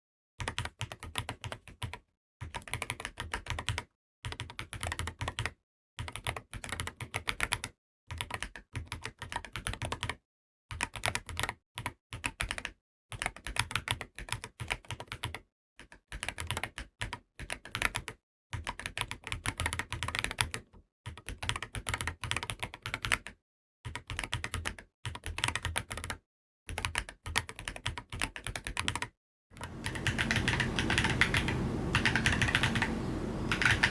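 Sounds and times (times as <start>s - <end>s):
mechanical keyboard typing: 29.9s - 32.9s, 33.5s - 33.9s.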